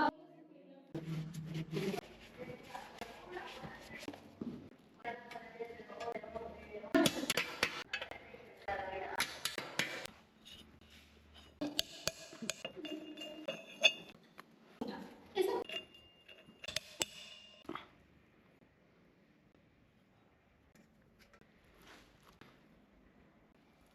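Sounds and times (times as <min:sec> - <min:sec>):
metal tools clinking: 0:10.4 - 0:14.3, 0:15.6 - 0:17.6.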